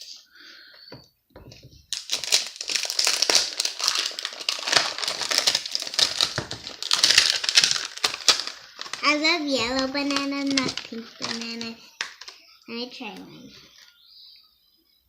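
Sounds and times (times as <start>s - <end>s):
packaging crinkling and tearing: 1.9s - 12.4s.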